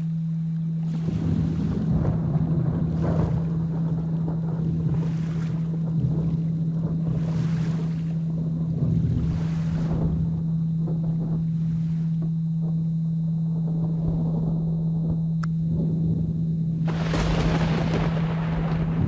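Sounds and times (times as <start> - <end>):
rain: 0.0 - 12.9, 16.8 - 19.0
steady low tone: 0.0 - 19.0
thunder rumbling: 0.8 - 19.0.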